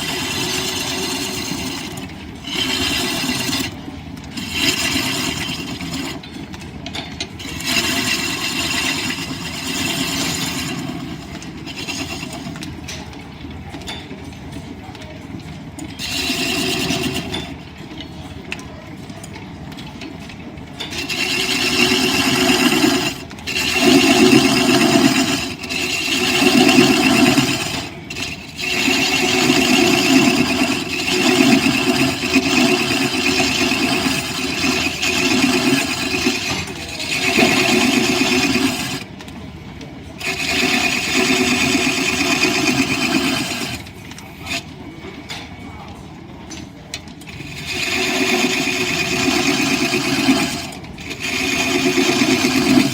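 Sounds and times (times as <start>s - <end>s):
turning tool cutting wood: 0.0s - 6.4s, 7.3s - 12.9s, 16.0s - 17.6s, 20.8s - 39.1s, 40.2s - 44.7s, 47.3s - 52.9s
wood lathe running: 0.0s - 6.4s, 7.2s - 13.0s, 16.0s - 17.6s, 20.8s - 39.1s, 40.2s - 44.7s, 47.3s - 52.9s.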